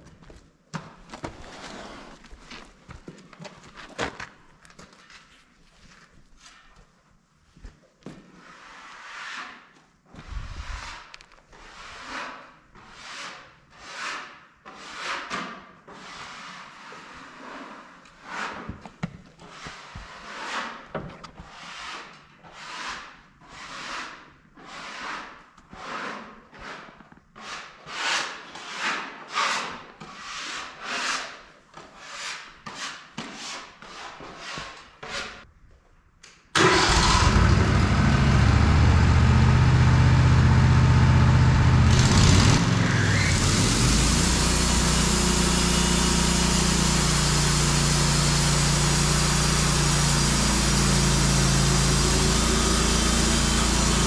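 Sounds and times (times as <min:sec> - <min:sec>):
sawmill engine running: 0:36.6 - 0:54.0.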